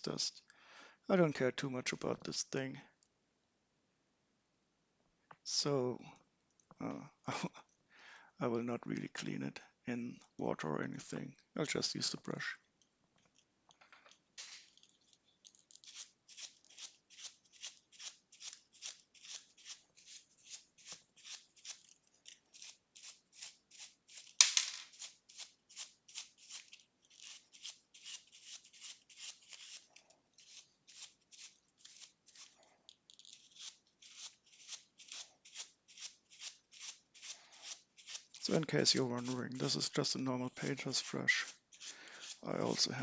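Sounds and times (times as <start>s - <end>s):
brush sweeping plastic model: 14.1s - 43.0s.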